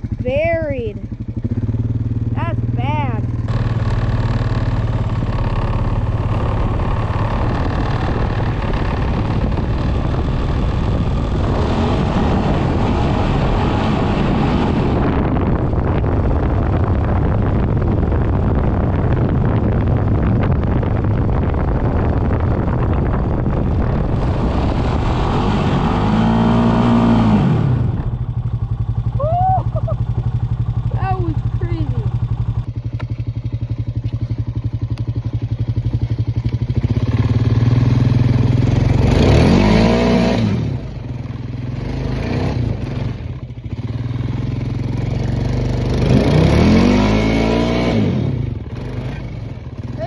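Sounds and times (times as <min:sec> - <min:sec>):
atv engine revving: 0:00.0 - 0:50.0.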